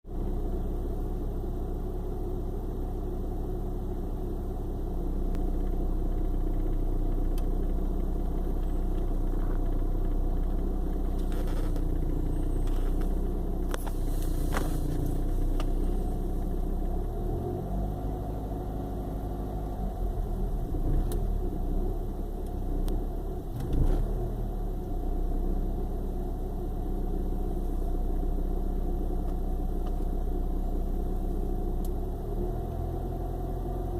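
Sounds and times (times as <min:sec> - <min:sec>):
car engine idling roughly: 0:00.1 - 0:17.4, 0:18.2 - 0:32.2.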